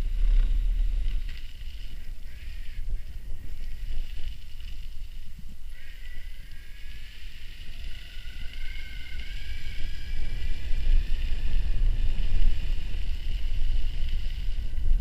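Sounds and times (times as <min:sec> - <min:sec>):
electric bike motor whine: 0:00.0 - 0:15.0
wind buffeting microphone: 0:00.0 - 0:15.0.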